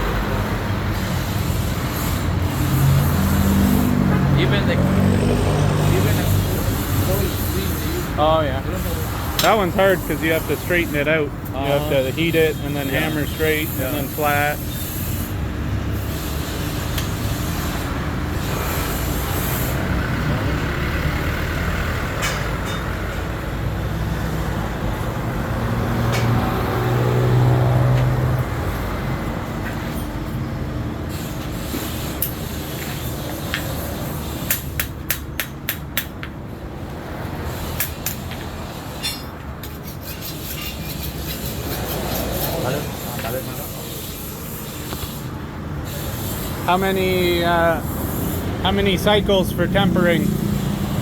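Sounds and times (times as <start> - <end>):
heavy vehicle engine passing: 0.0 - 14.6, 15.4 - 31.1, 41.2 - 51.0
road traffic rumble: 0.0 - 51.0.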